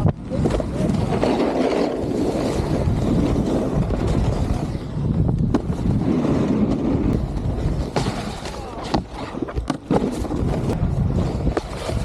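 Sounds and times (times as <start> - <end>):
snowboard scraping over snow: 0.0 - 12.0
wind rushing across microphone: 0.0 - 12.0.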